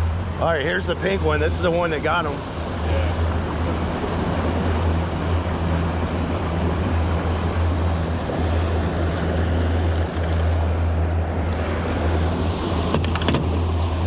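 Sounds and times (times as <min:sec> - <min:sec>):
boat engine humming: 0:00.0 - 0:14.0
water rushing along hull: 0:00.0 - 0:14.0.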